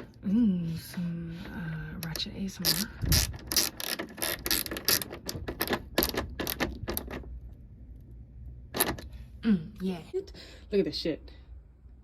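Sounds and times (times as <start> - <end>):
ratchet wrench clicking: 2.1 - 6.8.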